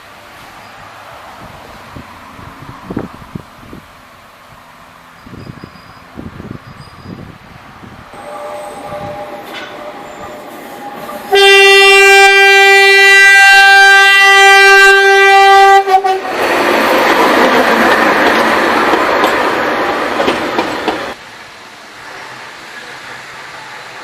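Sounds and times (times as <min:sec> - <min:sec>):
rushing train noise: 0:00.0 - 0:24.0
train horn long note: 0:08.2 - 0:16.4.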